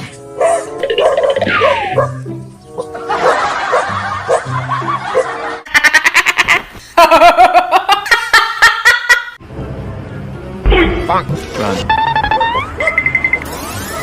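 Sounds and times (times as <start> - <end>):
background music with held notes: 0.0 - 5.7, 9.4 - 13.5
person laughing hard: 3.1 - 9.4.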